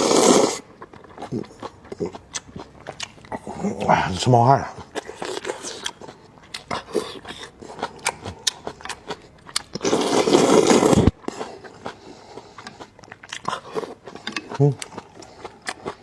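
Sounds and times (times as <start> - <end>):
slurping noodles: 0.0 - 1.4, 9.8 - 12.9
wet chewing: 0.0 - 16.0.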